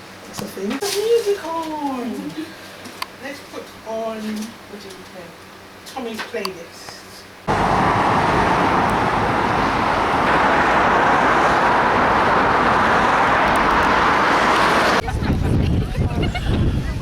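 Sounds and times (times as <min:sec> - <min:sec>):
loud steady rushing noise: 0:07.5 - 0:15.0.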